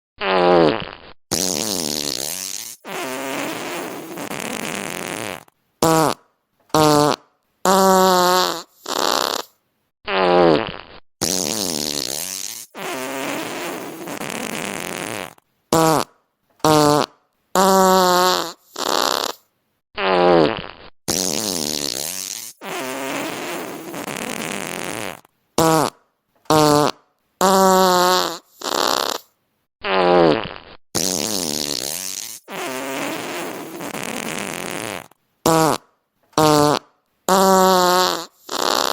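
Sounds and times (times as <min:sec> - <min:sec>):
fart sound effects: 0:00.2 - 0:38.9.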